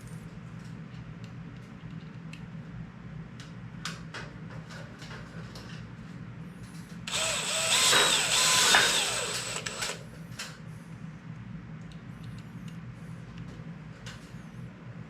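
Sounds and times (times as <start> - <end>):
cordless drill motor whining: 7.1 - 10.0.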